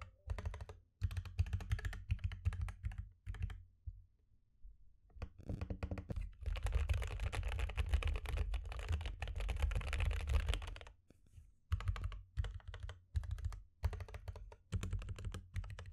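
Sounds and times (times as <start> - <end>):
keyboard typing: 0.1 - 3.6, 6.5 - 10.9, 11.7 - 15.9.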